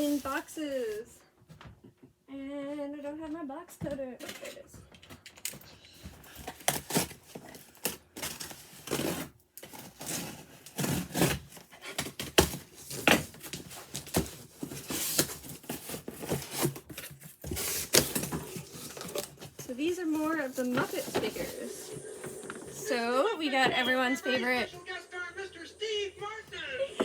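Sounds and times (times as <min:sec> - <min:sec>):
packaging rustling and knocking: 0:06.1 - 0:22.8
box cutter scraping cardboard: 0:06.4 - 0:21.8
tape and cardboard ripping: 0:06.5 - 0:21.4.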